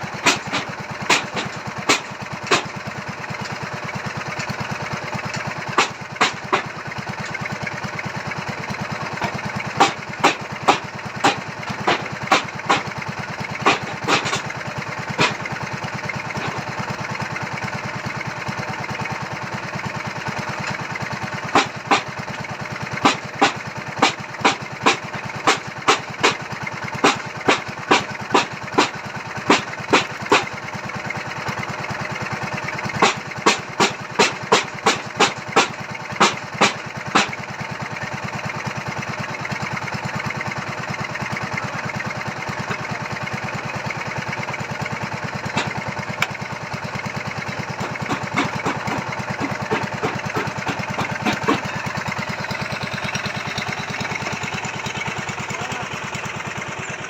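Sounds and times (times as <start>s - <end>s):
small petrol engine running: 0.0s - 57.0s
sharp knocks: 0.2s - 2.7s, 13.6s - 14.5s, 47.8s - 51.7s.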